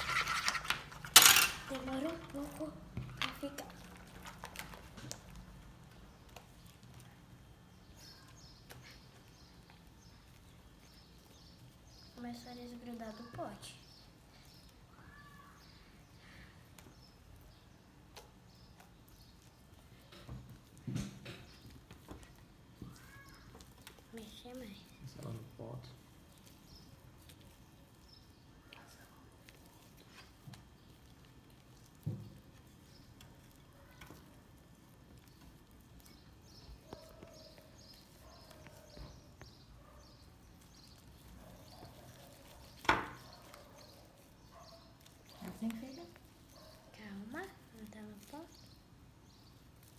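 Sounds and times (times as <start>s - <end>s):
slime being mixed in a pot: 0.0s - 49.9s.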